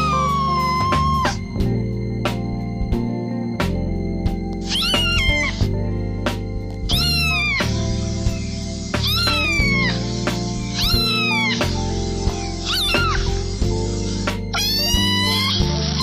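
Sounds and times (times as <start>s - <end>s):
cat meowing: 0.0s - 1.5s, 4.7s - 5.6s, 6.9s - 7.7s, 8.3s - 10.1s, 10.7s - 11.8s, 12.4s - 13.4s, 14.5s - 16.0s
music with a steady beat: 0.0s - 16.0s.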